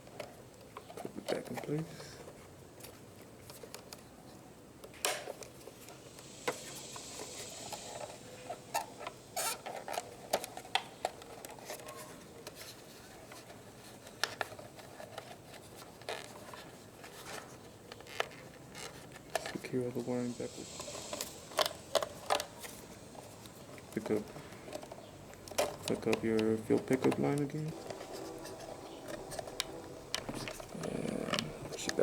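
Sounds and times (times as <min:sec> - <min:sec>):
scraping: 0:18.3 - 0:32.0
hands handling parts clicking: 0:20.6 - 0:32.0.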